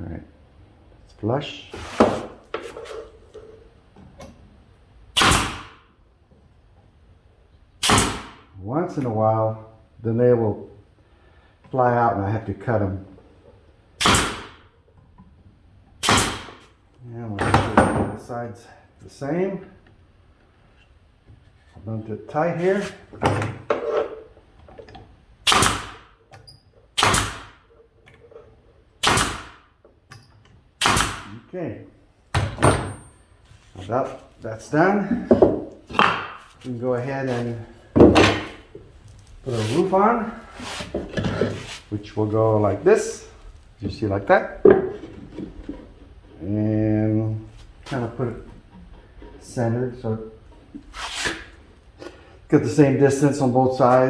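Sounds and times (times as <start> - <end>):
pneumatic nail gun firing: 5.1 - 5.9, 7.8 - 8.5, 14.0 - 14.7, 16.0 - 16.7, 25.4 - 26.2, 27.0 - 27.7, 29.0 - 29.8, 30.8 - 31.3, 51.0 - 51.6.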